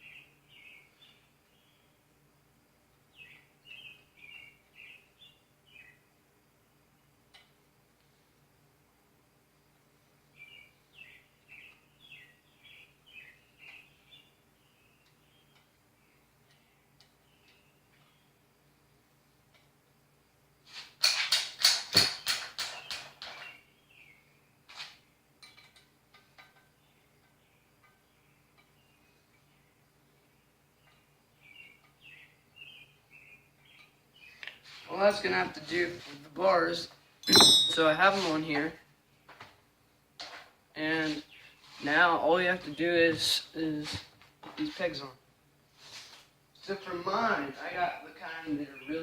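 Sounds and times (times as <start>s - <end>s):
small bird chirping faintly: 9.7s - 20.4s, 22.8s - 37.2s.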